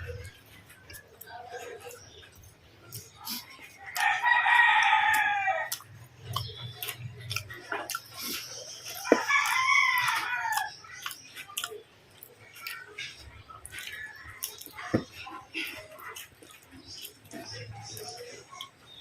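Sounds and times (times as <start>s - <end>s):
rooster crowing: 4.0s - 5.8s, 9.2s - 10.7s.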